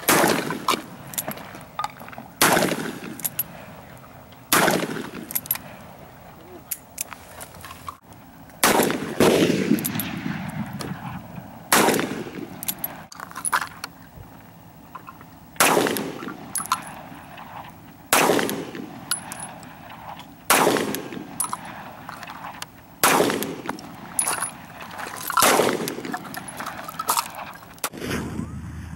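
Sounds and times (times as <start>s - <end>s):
loud gunshots with echo: 0.0s - 1.1s, 2.4s - 3.8s, 4.5s - 5.3s, 8.6s - 13.0s, 15.6s - 22.0s, 23.0s - 24.8s, 25.4s - 28.2s
faint distant gunshots: 2.4s - 3.8s, 4.5s - 5.8s, 8.6s - 13.0s, 15.6s - 28.3s.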